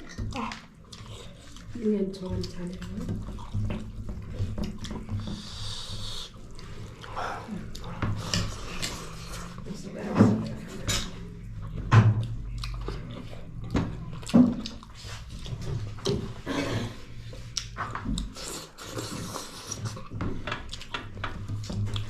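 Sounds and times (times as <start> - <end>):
chewing with mouth smacks: 0.0 - 4.0, 12.2 - 22.0.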